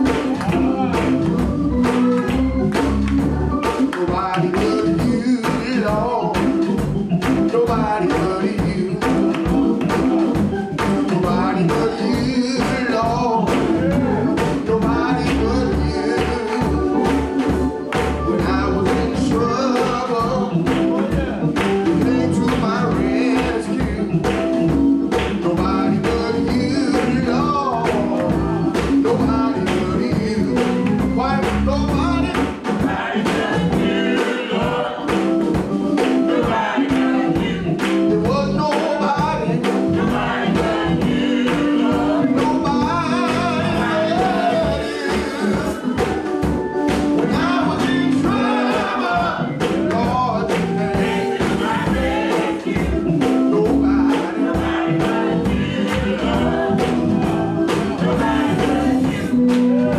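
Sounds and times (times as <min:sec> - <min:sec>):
deep bass line: 0:00.0 - 0:33.9, 0:37.2 - 0:52.2, 0:52.8 - 0:59.9
band accompaniment: 0:00.0 - 0:59.9
church choir singing gospel: 0:00.0 - 0:59.9
percussive beat: 0:00.0 - 0:59.9.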